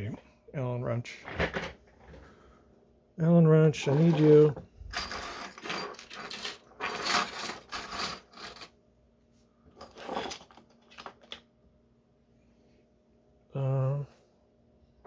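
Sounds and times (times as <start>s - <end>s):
small tools clattering and rustling: 1.2s - 2.3s, 3.8s - 8.8s, 9.7s - 11.5s.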